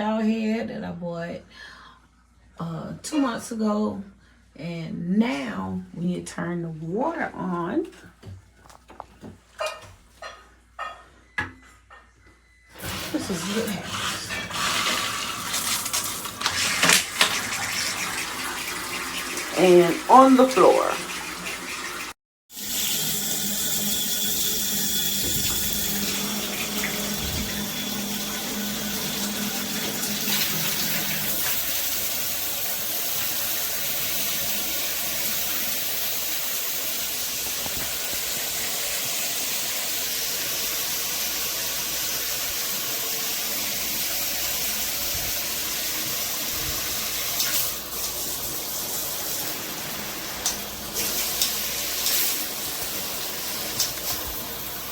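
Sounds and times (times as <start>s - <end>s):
shower water spraying: 12.8s - 54.9s.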